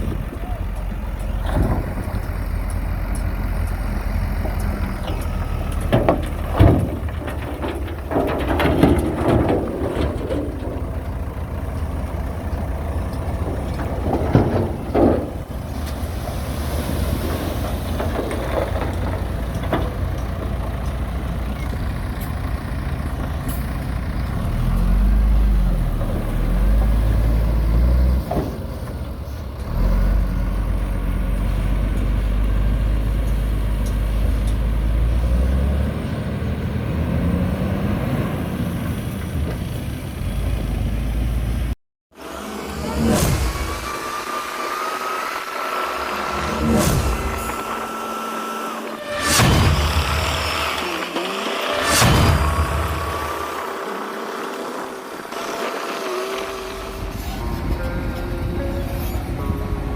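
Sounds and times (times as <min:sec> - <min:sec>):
heavy machine diesel engines: 0:00.0 - 0:59.9
loud metallic clanks: 0:00.8 - 0:16.0, 0:45.4 - 0:59.6.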